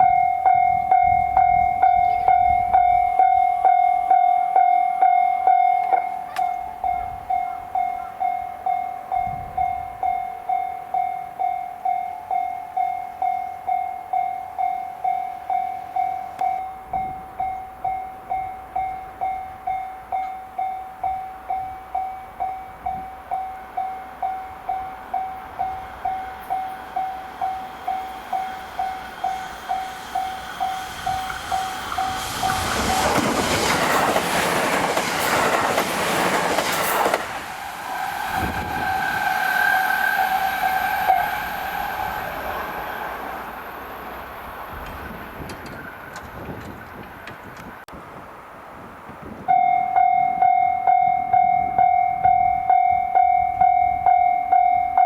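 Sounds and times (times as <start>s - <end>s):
level crossing warning bell: 0.0s - 33.2s, 49.4s - 55.0s
train passing at speed: 0.0s - 55.0s.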